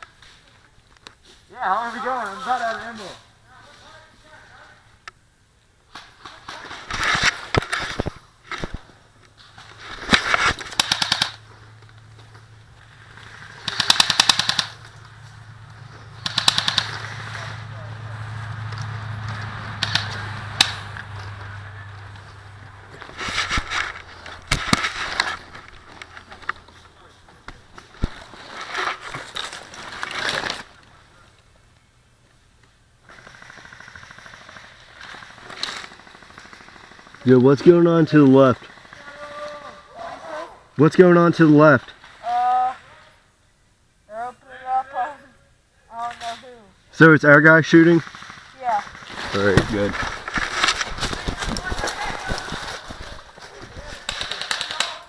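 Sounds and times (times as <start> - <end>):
airsoft guns firing bursts: 10.6 - 11.4, 13.3 - 14.8, 16.2 - 17.6, 33.0 - 37.4, 38.5 - 39.4, 47.8 - 49.9, 54.0 - 55.0.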